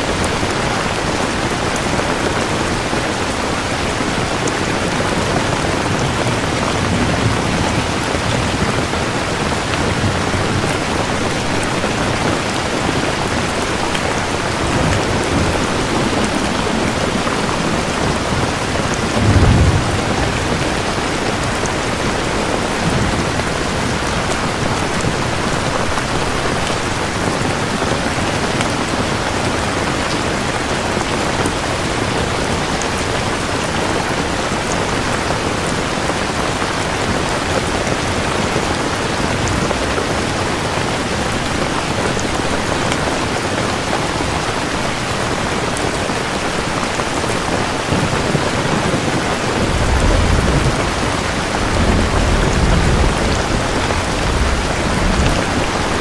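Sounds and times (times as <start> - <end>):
heavy rain falling: 0.0 - 56.0
distant thunder rumbling: 5.4 - 26.2, 47.9 - 56.0.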